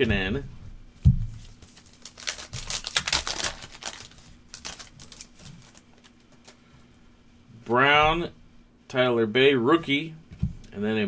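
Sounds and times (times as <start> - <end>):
card pack wrapper crinkling: 1.6 - 6.6.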